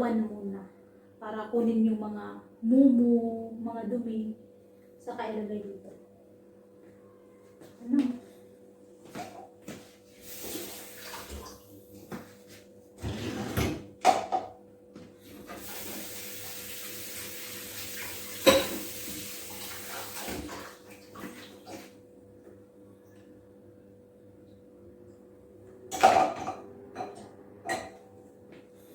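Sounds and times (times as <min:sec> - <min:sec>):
tap running into a sink: 0:15.4 - 0:21.8
dishes clattering: 0:18.4 - 0:18.9, 0:25.9 - 0:28.0.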